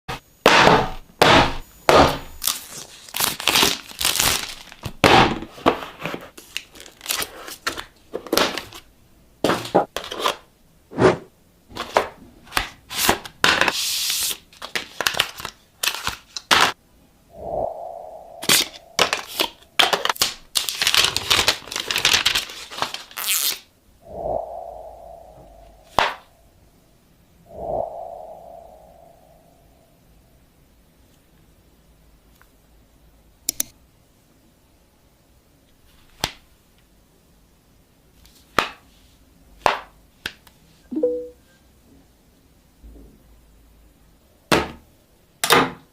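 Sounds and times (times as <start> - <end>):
plastic wrap tearing and crinkling: 2.4 - 5.2, 6.4 - 7.9, 19.1 - 23.7.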